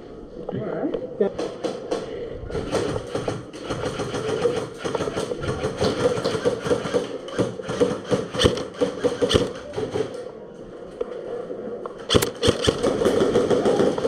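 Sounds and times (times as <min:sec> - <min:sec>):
sharp loud cracks: 0:02.5 - 0:10.1, 0:12.1 - 0:14.0
airsoft guns firing rapidly: 0:02.5 - 0:10.2, 0:12.1 - 0:14.0.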